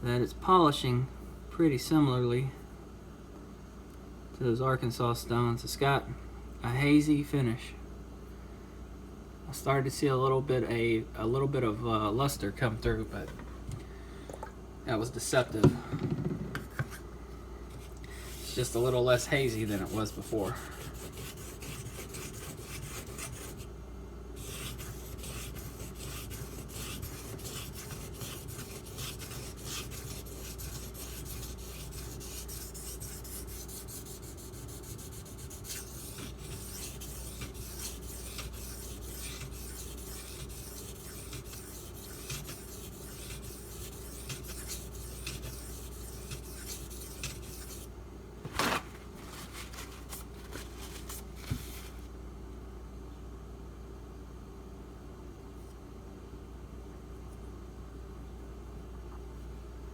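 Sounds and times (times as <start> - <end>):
knife scraping on whetstone: 24.4 - 47.9.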